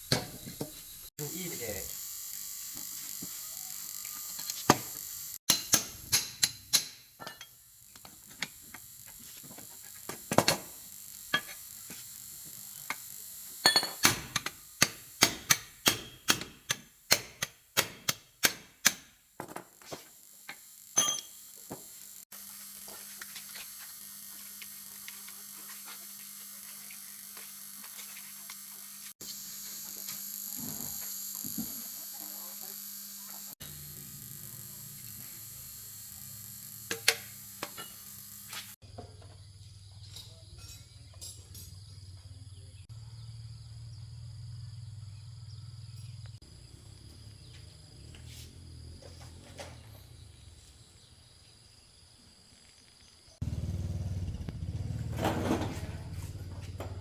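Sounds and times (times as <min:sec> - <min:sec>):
hammer striking metal: 0:05.5 - 0:07.5.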